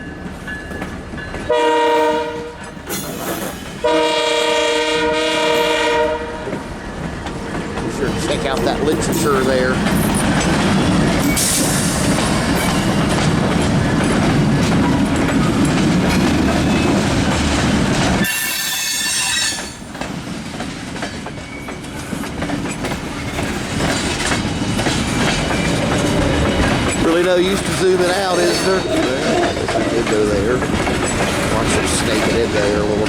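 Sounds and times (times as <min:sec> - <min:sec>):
diesel locomotives rumbling: 0:00.0 - 0:33.0
wheels clicking over rail joints: 0:06.5 - 0:18.5, 0:19.2 - 0:33.0
high wheel squeal: 0:18.2 - 0:19.8, 0:28.1 - 0:29.6.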